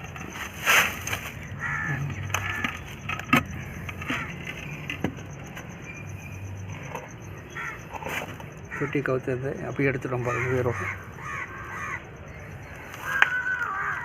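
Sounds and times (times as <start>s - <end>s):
soil rustling: 0.0s - 5.6s.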